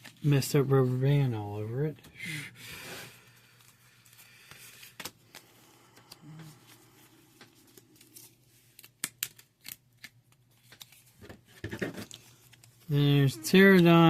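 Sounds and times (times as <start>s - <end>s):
paper cards rustling: 0.0s - 1.2s, 3.1s - 14.0s
cards snapping apart: 8.7s - 11.1s.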